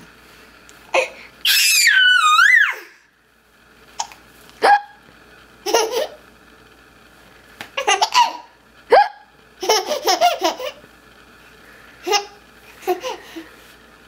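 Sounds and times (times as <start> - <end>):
child giggling: 5.7 - 6.2, 7.8 - 10.8, 12.0 - 13.4.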